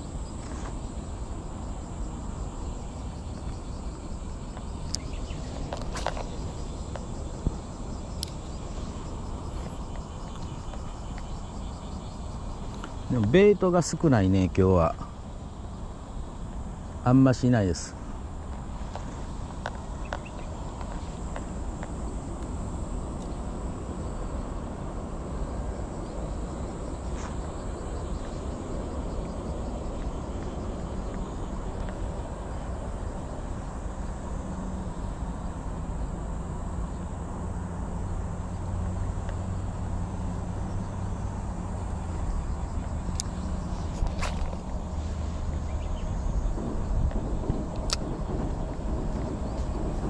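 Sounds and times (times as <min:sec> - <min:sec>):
high insect buzz: 0:00.0 - 0:50.0
wind rumble on microphone: 0:17.8 - 0:50.0.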